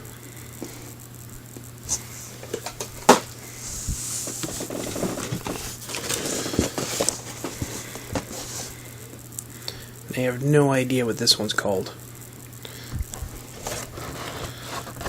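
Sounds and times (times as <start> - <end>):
cardboard rustling and scraping: 1.9 - 8.8, 13.1 - 15.0.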